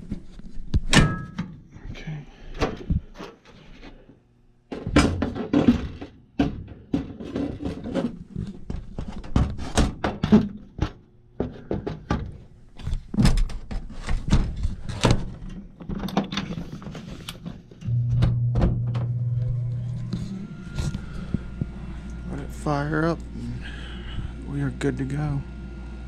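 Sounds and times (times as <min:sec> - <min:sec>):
furnace motor humming: 0:14.0 - 0:26.0.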